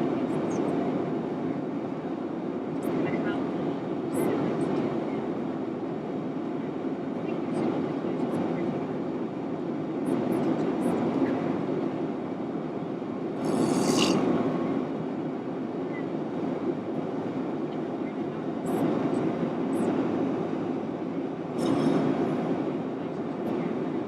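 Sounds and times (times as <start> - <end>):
man snoring loudly: 13.4 - 14.2.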